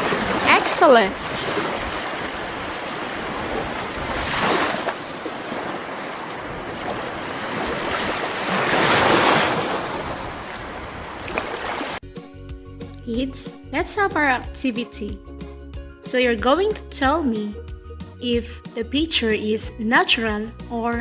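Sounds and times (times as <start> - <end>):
ocean waves washing ashore: 0.0 - 12.0.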